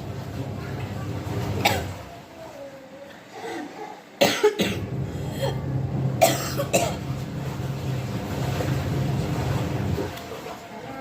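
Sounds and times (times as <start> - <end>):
person coughing: 1.6 - 1.9, 4.2 - 5.6, 6.2 - 7.0
steady low hum: 4.2 - 10.2.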